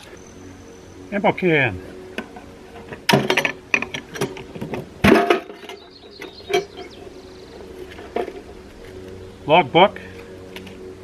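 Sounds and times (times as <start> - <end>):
metal can latch and lid clanks: 3.0 - 5.8.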